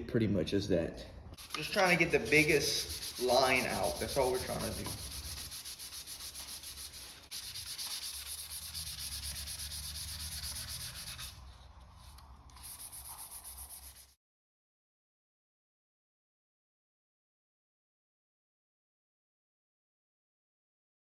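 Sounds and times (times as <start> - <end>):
sandpaper rubbing: 1.4 - 14.2.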